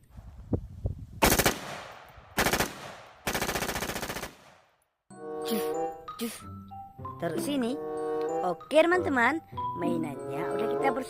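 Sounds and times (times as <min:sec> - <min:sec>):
automatic rifle gunfire: 0:01.2 - 0:04.7.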